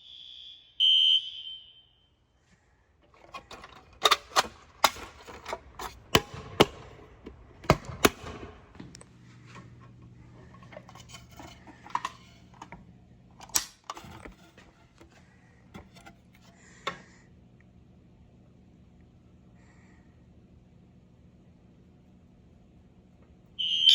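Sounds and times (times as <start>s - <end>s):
faint low hum: 1.7s - 23.9s
hardware clicks and knocks: 3.0s - 15.2s, 15.8s - 17.0s.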